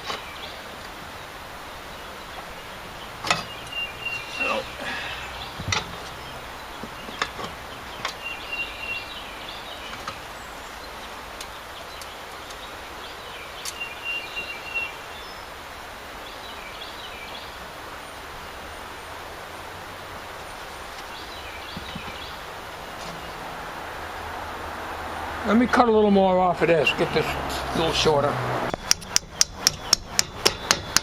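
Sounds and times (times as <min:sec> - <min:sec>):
bird chirping: 0:00.0 - 0:15.6, 0:16.2 - 0:19.4, 0:20.3 - 0:25.4, 0:28.7 - 0:31.0
outdoor background hiss: 0:00.0 - 0:31.0
light clicks and knocks: 0:05.6 - 0:06.2.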